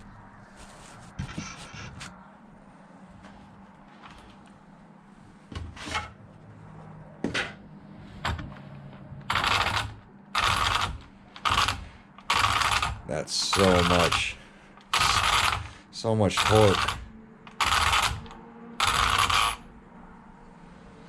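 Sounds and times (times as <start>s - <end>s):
servo gear whirring: 16.4s - 19.6s.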